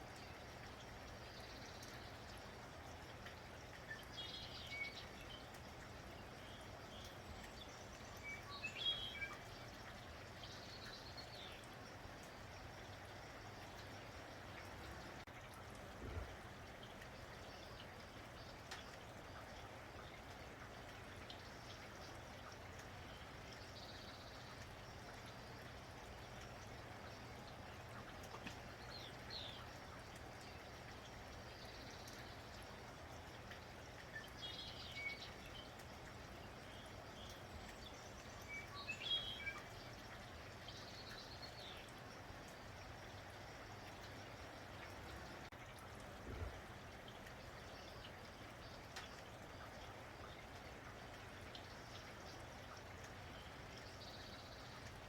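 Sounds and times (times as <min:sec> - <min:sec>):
faint rain falling: 0:00.0 - 0:55.0
water drip: 0:00.0 - 0:55.0
small birds chirping: 0:00.1 - 0:15.3, 0:16.7 - 0:45.5, 0:46.3 - 0:55.0.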